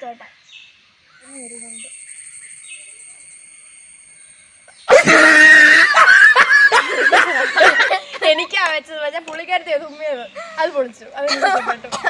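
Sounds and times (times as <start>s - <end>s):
laughter: 4.9s - 8.4s, 11.2s - 12.0s.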